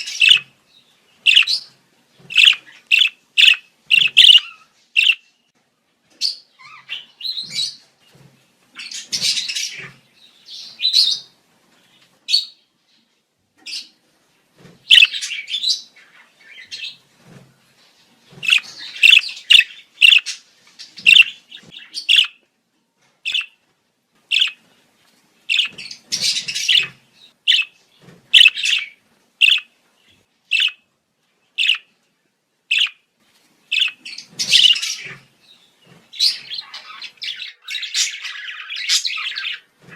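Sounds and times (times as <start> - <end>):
budgerigars chirping and chattering: 0.0 - 5.3, 6.2 - 7.9, 8.7 - 11.4, 12.3 - 12.6, 14.9 - 17.1, 18.3 - 22.4, 23.3 - 23.6, 24.3 - 24.7, 25.5 - 30.8, 31.6 - 31.9, 32.7 - 33.0, 33.7 - 39.9.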